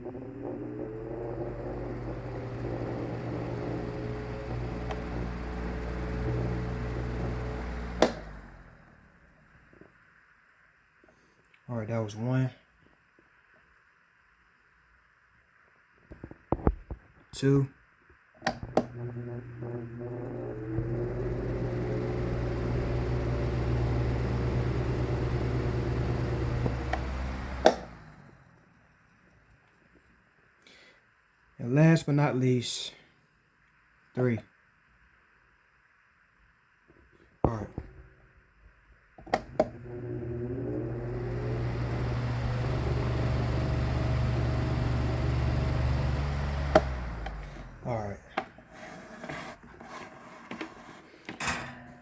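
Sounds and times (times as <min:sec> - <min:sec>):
electric fan motor hum: 0:00.0 - 0:09.3, 0:18.4 - 0:28.6, 0:39.2 - 0:52.0
fan switch clicks: 0:08.0 - 0:08.3.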